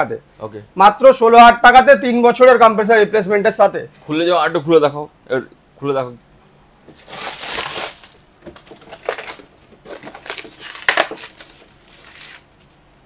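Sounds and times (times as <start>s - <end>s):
sharp plastic crack: 6.9s - 12.6s
plastic crinkling and crackling: 6.9s - 12.8s.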